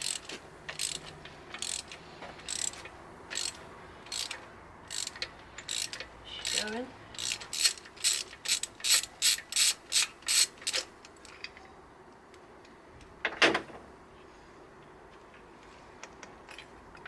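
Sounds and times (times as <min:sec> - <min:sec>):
ratchet wrench clicking: 0:00.0 - 0:10.9.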